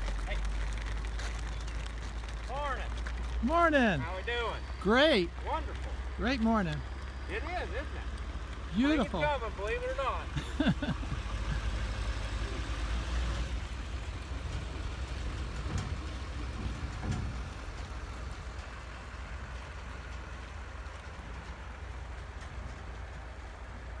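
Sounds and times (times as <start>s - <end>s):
engine low rumble: 0.0s - 24.0s.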